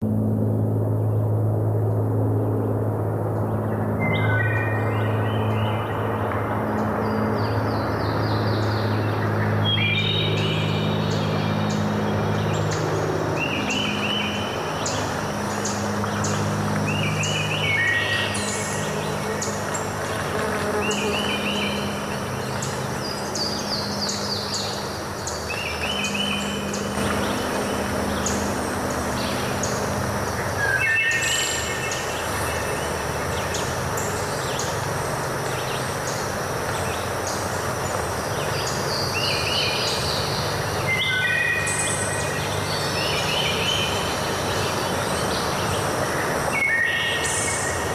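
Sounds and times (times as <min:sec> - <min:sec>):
low steady hum: 0:00.0 - 0:36.8
birds singing: 0:03.4 - 0:47.9.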